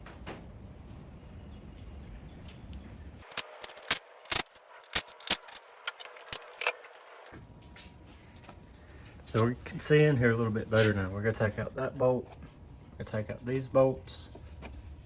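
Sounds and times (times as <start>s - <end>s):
low steady background noise: 0.0s - 15.0s
metal tools clinking: 3.2s - 6.9s.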